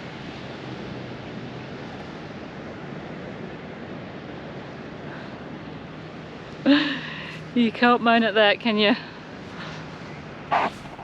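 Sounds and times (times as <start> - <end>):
wind on microphone: 10.5 - 11.0.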